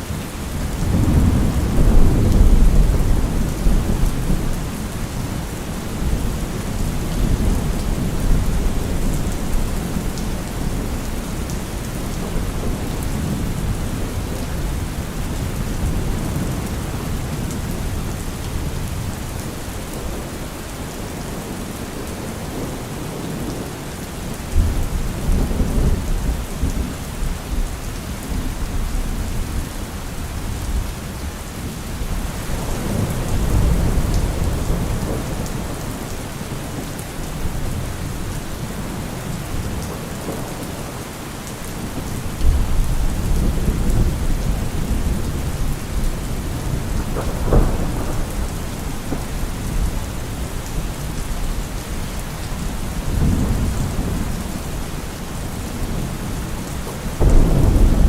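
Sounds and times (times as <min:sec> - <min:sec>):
heavy rain: 0:00.0 - 0:58.0
low rolls of thunder: 0:00.6 - 0:05.2, 0:32.1 - 0:41.1, 0:41.9 - 0:51.6, 0:52.9 - 0:56.5, 0:57.1 - 0:58.0
sharp thunder crack: 0:57.2 - 0:58.0.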